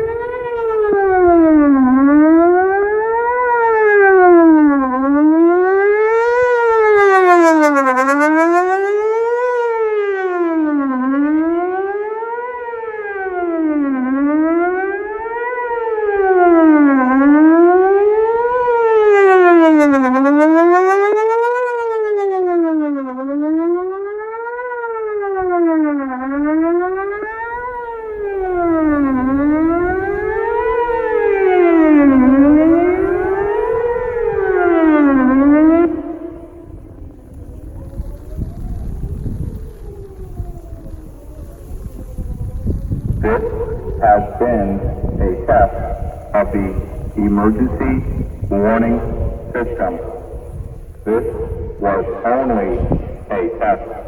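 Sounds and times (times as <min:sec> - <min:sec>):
warning siren wailing: 0:00.0 - 0:54.0.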